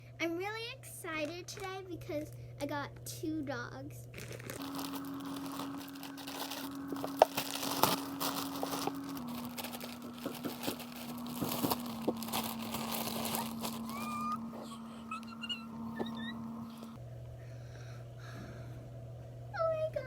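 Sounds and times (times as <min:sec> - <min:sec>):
steady low hum: 0:00.0 - 0:20.0
packaging crinkling: 0:04.1 - 0:17.0.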